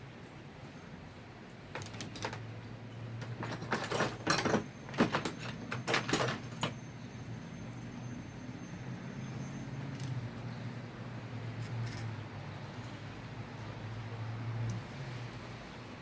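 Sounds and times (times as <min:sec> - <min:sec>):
metal tools clinking and rattling: 0:01.8 - 0:02.4, 0:03.2 - 0:06.8, 0:11.6 - 0:13.0.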